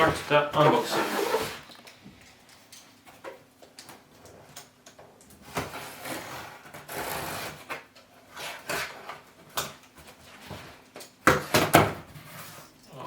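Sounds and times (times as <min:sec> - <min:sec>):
cardboard scraping and rustling: 0:00.0 - 0:01.7, 0:12.0 - 0:12.8.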